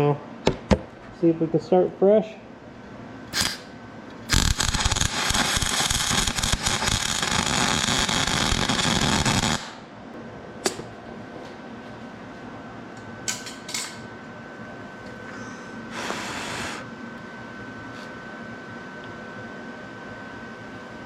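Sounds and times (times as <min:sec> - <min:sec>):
welding arc crackling: 0:03.3 - 0:09.9.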